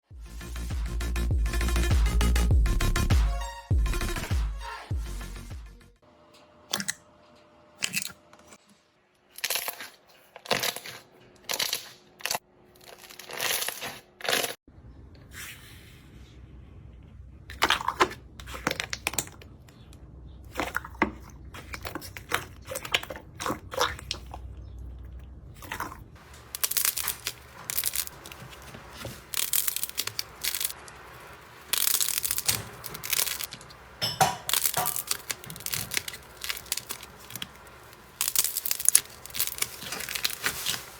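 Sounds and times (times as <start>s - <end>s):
slime crackling and popping: 26.2s - 40.9s.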